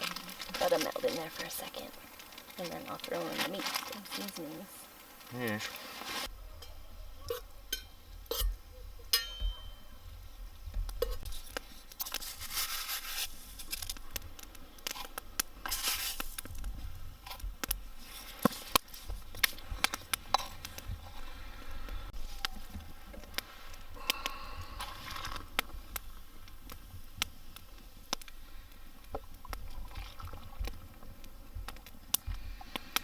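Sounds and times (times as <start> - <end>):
food packaging tearing and rustling: 0.0 - 6.3, 11.3 - 14.1, 14.9 - 16.5, 24.8 - 25.5
short hissing rustles: 3.2 - 6.3
utensils scraping metal pot: 5.6 - 8.6, 14.9 - 16.4, 18.0 - 21.4.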